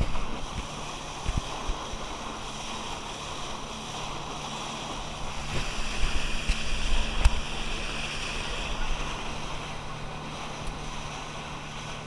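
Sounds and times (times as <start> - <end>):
boat engine hum: 0.0 - 12.0
water rushing past hull: 0.0 - 12.0
wind buffeting microphone: 4.8 - 12.0.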